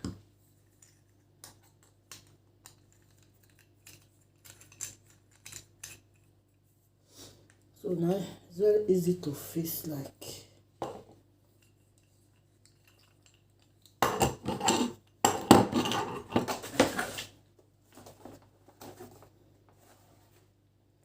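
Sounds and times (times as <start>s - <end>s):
metal and plastic parts clattering: 0.8s - 6.3s.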